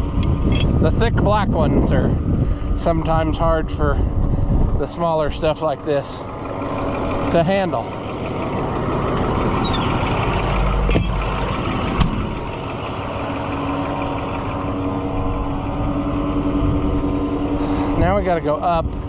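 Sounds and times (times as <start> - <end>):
tractor engine running: 0.0 - 19.0
steady hum: 10.4 - 19.0.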